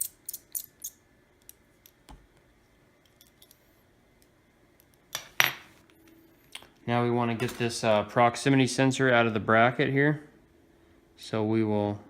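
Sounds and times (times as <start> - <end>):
small metal tools clicking: 0.0 - 2.0.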